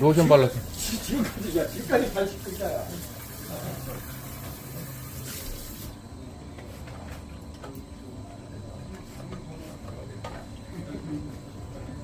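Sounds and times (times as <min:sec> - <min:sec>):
running water hissing: 0:00.0 - 0:06.0.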